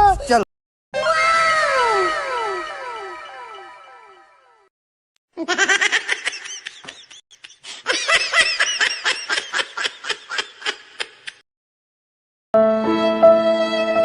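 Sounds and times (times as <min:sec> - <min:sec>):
high-pitched laughter: 0:05.4 - 0:11.4.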